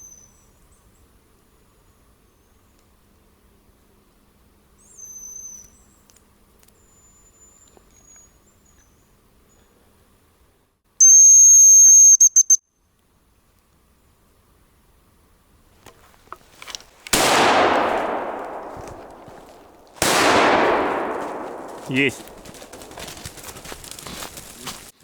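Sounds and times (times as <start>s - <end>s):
distant grouse whistling: 11.0s - 12.6s
grouse decoy whistle: 11.0s - 12.6s.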